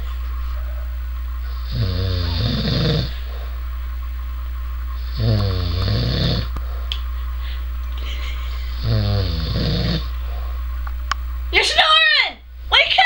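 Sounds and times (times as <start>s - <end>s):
steady low hum: 0.0s - 13.0s
man snoring loudly: 1.5s - 3.2s, 5.0s - 6.5s, 8.8s - 10.1s.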